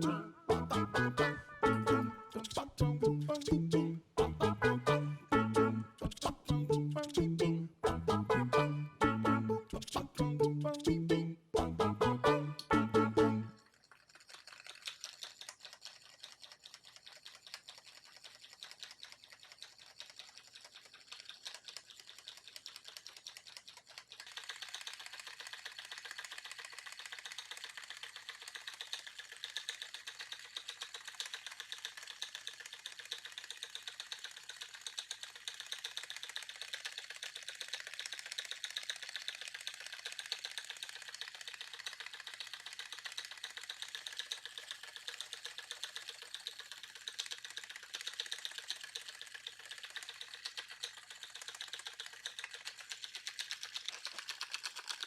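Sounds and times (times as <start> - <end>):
patting machine tapping: 0.0 - 11.9.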